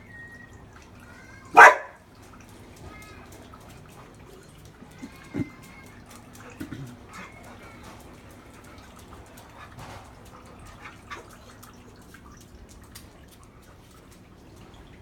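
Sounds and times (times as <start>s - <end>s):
dog whimpering: 4.8s - 8.0s.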